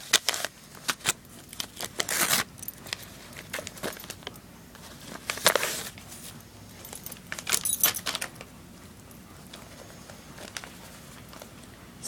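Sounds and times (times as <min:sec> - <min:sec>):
light jingling and rattling: 0:06.4 - 0:09.8.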